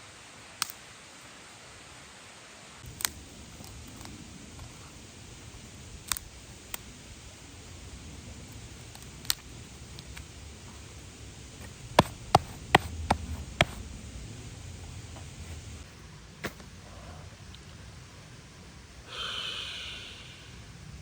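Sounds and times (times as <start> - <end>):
faint low rumble: 2.8 - 21.0
sharp knocks: 12.0 - 13.8.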